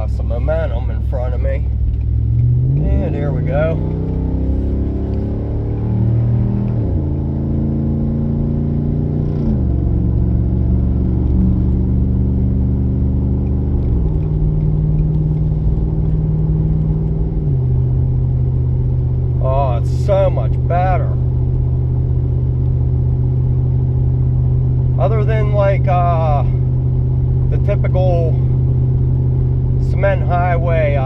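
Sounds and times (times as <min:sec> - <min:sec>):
pickup truck accelerating and upshifting: 0:02.0 - 0:20.2.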